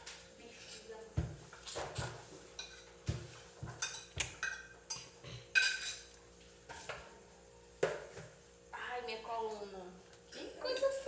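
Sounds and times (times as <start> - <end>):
cutlery clinking on plates: 1.5 - 7.1.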